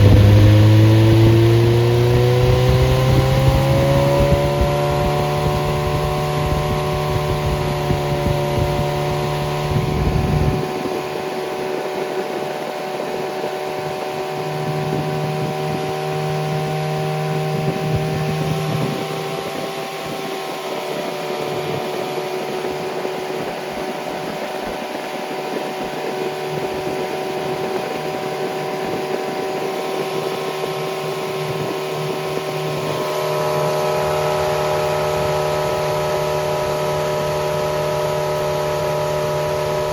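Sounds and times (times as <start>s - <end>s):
car engine running: 0.0s - 10.6s.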